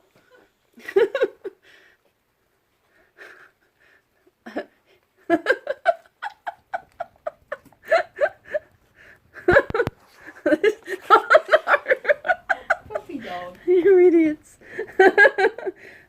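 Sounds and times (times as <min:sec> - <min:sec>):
person giggling: 0:04.4 - 0:13.5.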